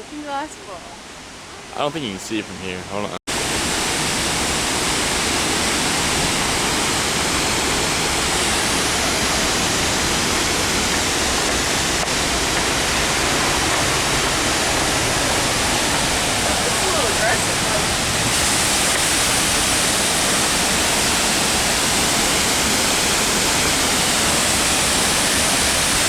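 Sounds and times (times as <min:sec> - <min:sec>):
waterfall roaring: 0:00.0 - 0:26.0.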